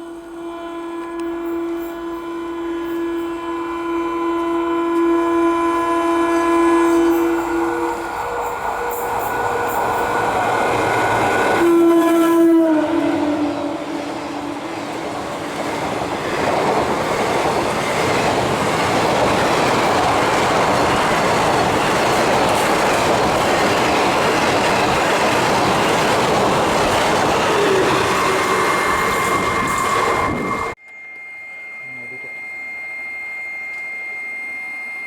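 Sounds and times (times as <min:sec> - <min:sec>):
train wheels rushing and clattering: 0:07.9 - 0:11.7, 0:13.8 - 0:30.8.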